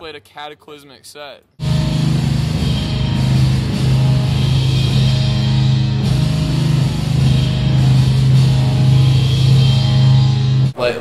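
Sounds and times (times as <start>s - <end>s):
distorted heavy metal guitars: 1.6s - 10.8s.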